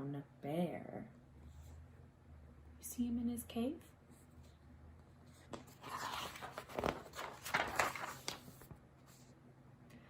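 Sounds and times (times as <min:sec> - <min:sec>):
picture book rustling: 0:04.0 - 0:09.4.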